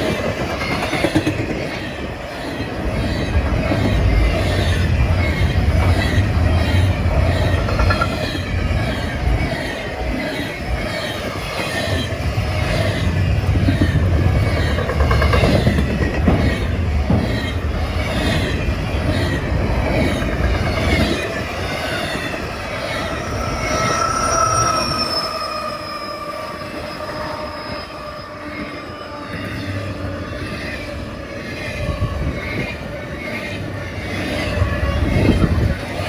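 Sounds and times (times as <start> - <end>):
train wheels clicking over rail joints: 0.0 - 25.0
high-pitched wheel squeal: 19.9 - 30.9.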